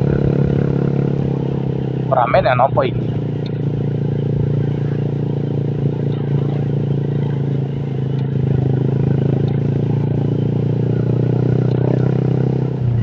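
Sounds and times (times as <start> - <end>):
scooter engine running: 0.0 - 13.0.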